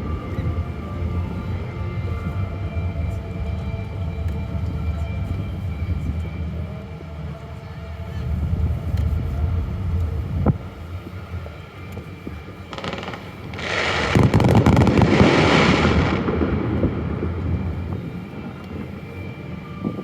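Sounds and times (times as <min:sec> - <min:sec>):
distant fireworks rumble: 0:00.0 - 0:20.0
sharp firework bang: 0:12.7 - 0:17.4.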